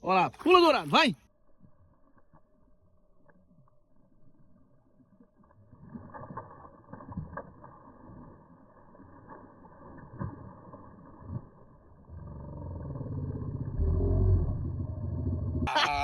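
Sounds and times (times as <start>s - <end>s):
water sloshing and splashing: 0.2s - 12.4s.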